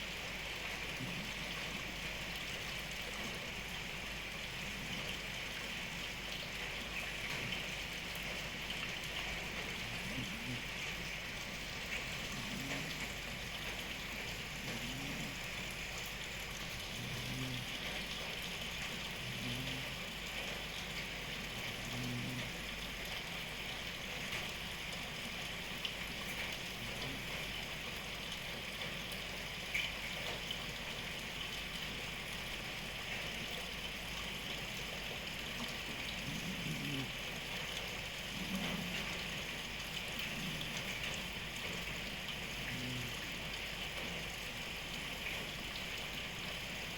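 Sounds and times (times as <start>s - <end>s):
steady rain: 0.0s - 46.9s
cat snoring: 9.8s - 10.8s, 12.1s - 13.4s, 14.4s - 15.9s, 16.8s - 18.1s, 18.9s - 20.1s, 21.7s - 22.6s, 36.2s - 37.2s, 38.3s - 39.3s, 40.2s - 40.9s, 42.6s - 43.4s.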